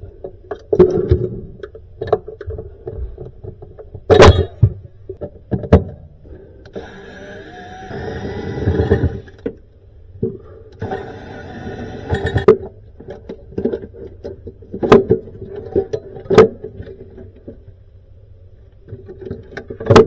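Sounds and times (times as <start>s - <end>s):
cordless drill driving screws: 6.7s - 9.4s, 10.8s - 12.5s.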